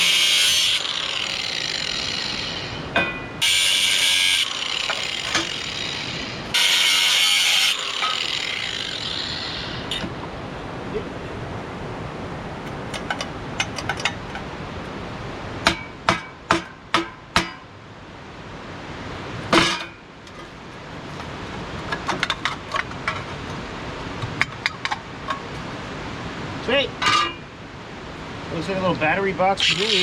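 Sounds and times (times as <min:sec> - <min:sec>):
metal knocks and clinks: 0:12.7 - 0:14.5
hard hammer strikes on metal: 0:15.6 - 0:17.7.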